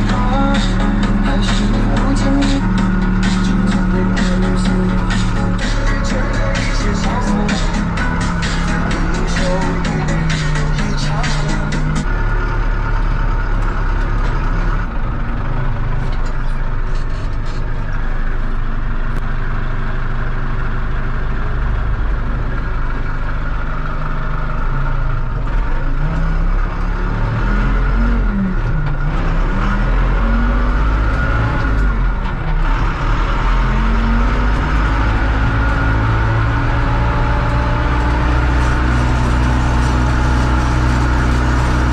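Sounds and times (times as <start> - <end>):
low rising and falling tone: 0.0 - 14.0, 29.3 - 41.9
tractor engine running: 0.0 - 41.9
gear whine: 30.1 - 41.9.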